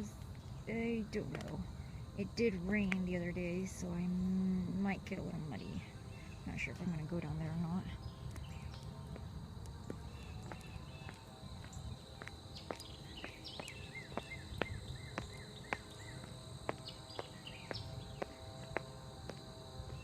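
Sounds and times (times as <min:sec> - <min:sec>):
birds chirping: 0:00.0 - 0:19.3
high insect trill: 0:00.0 - 0:20.0.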